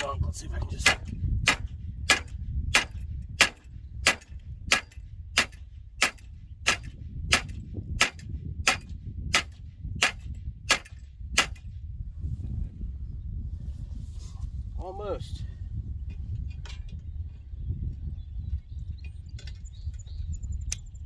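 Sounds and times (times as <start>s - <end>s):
hammer striking steel: 0.8s - 11.6s.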